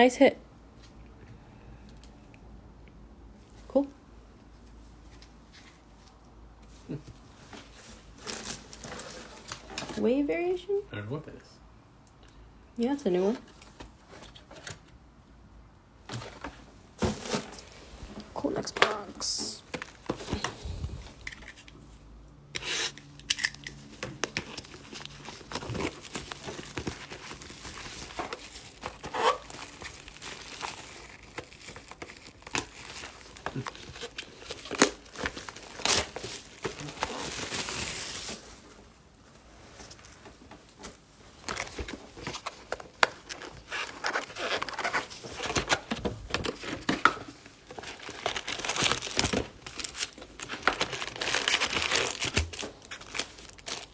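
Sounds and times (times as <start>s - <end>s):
plastic wrappers crinkling and tearing: 22.6s - 38.8s, 39.8s - 53.9s.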